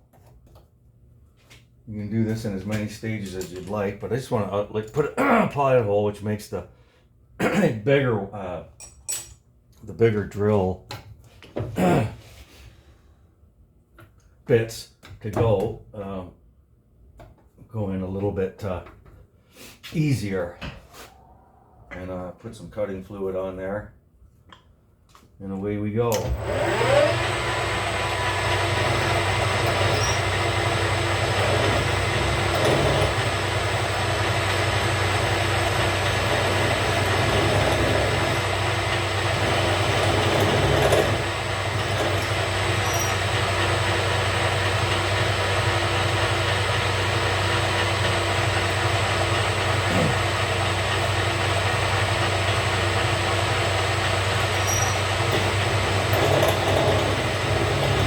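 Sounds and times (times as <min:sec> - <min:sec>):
drill bit cutting metal: 0:26.3 - 0:58.0
metal lathe running: 0:26.3 - 0:58.0.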